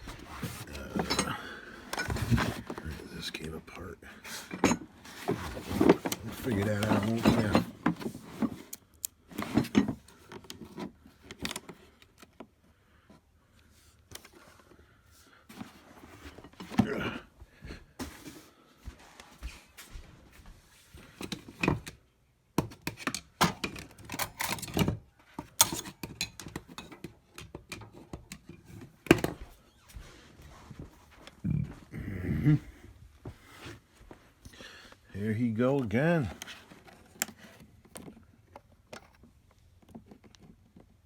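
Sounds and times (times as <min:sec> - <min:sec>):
metal tools clattering in case: 0:00.3 - 0:03.0, 0:04.2 - 0:08.7, 0:22.9 - 0:29.4.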